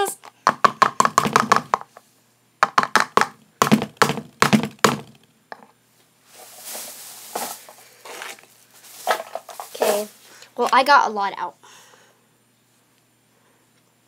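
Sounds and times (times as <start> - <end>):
sticky slime rustle: 6.3 - 10.2.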